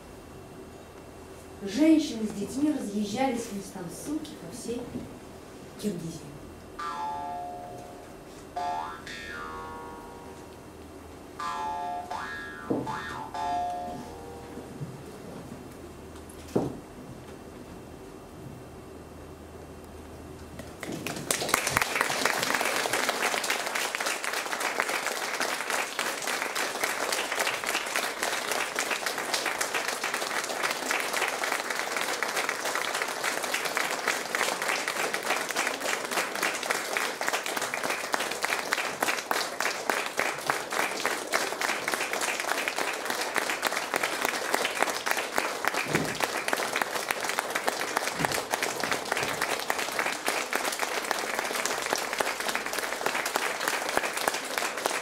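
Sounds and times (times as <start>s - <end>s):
audience applauding: 20.6s - 55.0s.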